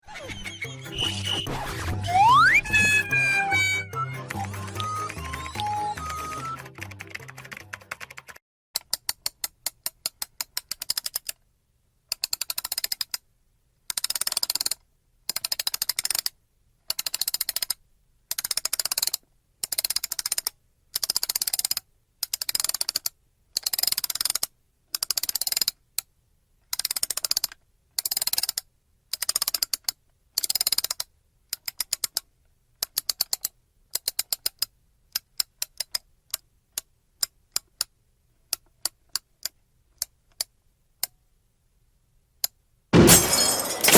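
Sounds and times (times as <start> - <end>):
clock mainspring ratchet clicking: 8.8 - 11.4, 12.1 - 13.2, 13.9 - 26.1, 26.7 - 32.2, 32.8 - 37.9.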